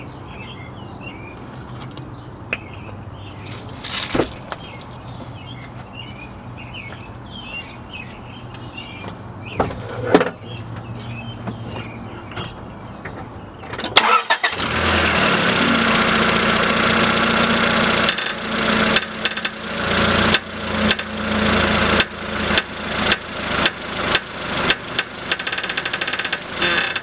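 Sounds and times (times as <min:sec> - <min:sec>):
birds chirping: 0:00.0 - 0:14.6.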